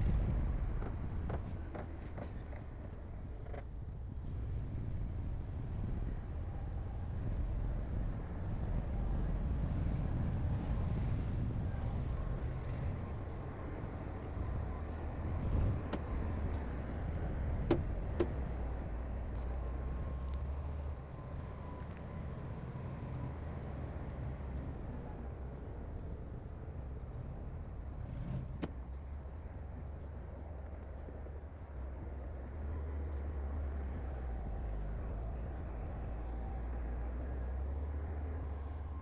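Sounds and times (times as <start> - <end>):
diesel machinery rumbling: 9.4 - 39.0.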